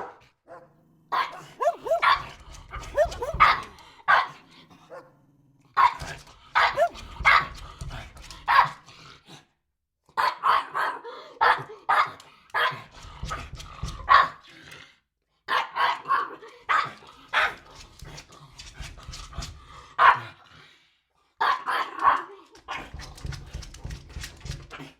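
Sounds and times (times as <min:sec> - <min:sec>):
dog barking: 0:00.0 - 0:05.2, 0:05.8 - 0:07.6, 0:08.4 - 0:08.8, 0:10.2 - 0:12.9, 0:14.0 - 0:14.4, 0:15.5 - 0:17.6, 0:20.0 - 0:20.4, 0:21.4 - 0:22.9.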